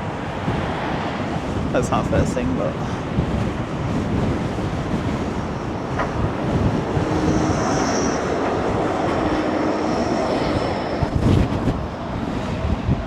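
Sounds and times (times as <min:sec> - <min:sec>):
tram passing: 0:00.0 - 0:13.0
wind buffeting microphone: 0:00.0 - 0:13.0
high whine of running gear: 0:03.9 - 0:13.0.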